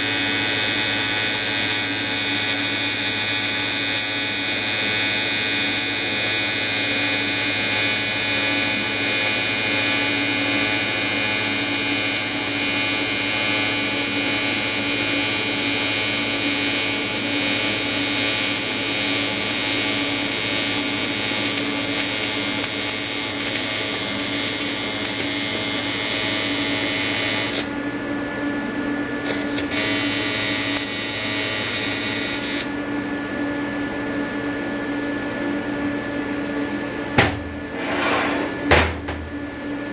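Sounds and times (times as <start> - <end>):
welding arc buzzing: 0.0 - 27.8, 29.2 - 32.8.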